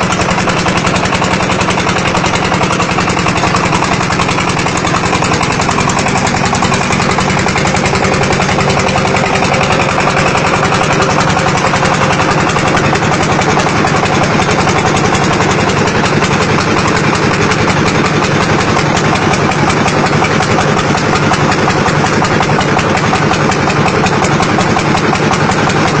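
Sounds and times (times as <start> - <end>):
brick press machine pulsing: 0.0 - 26.0.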